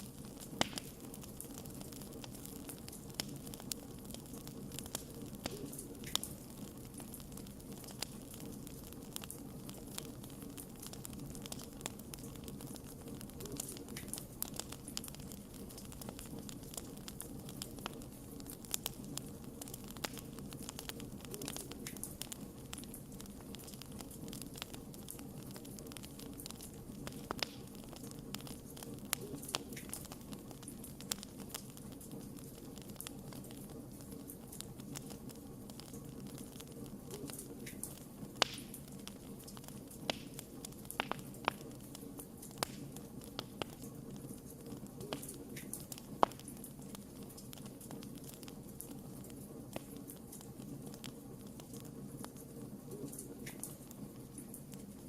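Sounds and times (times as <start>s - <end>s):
burning logs crackling and popping: 0.0s - 55.0s.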